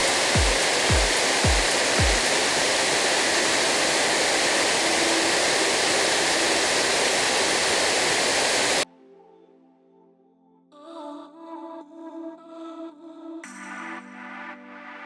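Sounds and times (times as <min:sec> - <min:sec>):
waterfall rushing: 0:00.0 - 0:08.8.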